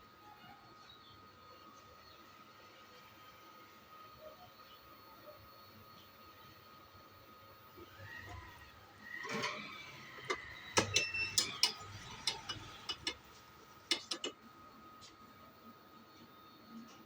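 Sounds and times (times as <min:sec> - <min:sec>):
faint high whine: 0:00.0 - 0:17.0
metal tools tapping circuit board: 0:10.3 - 0:14.4.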